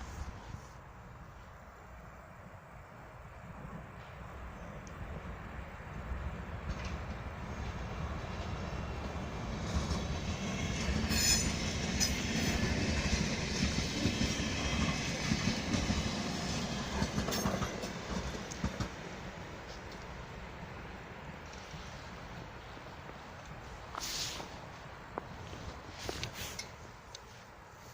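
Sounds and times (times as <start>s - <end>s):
train wheels clacking: 6.6s - 20.1s
high wheel squeal: 11.0s - 12.6s.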